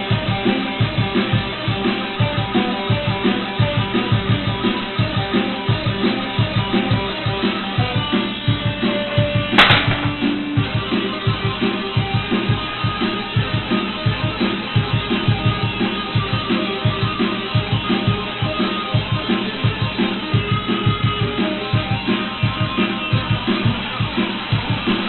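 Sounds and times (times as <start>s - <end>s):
sharp click: 9.6s - 10.4s.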